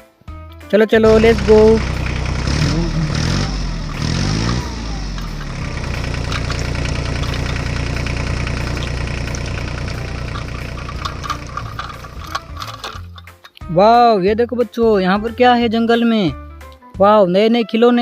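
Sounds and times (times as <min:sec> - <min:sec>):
tractor engine running: 0:01.0 - 0:13.6.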